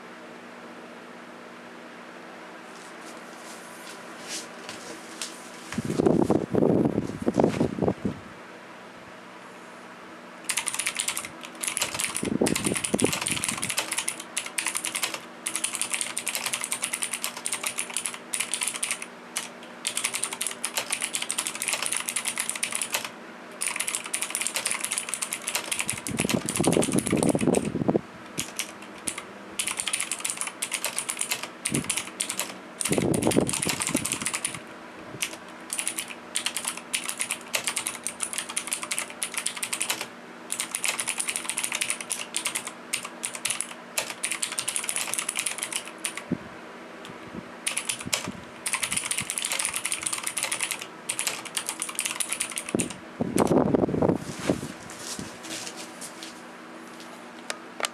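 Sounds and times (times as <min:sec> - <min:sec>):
mechanical keyboard typing: 0:10.5 - 0:27.7, 0:28.3 - 0:34.6, 0:35.2 - 0:46.2, 0:47.7 - 0:53.0.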